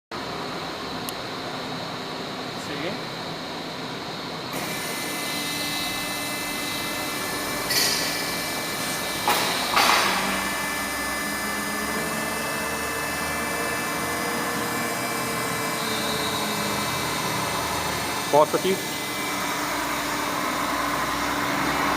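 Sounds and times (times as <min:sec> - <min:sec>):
band saw machine humming: 0:04.5 - 0:21.9.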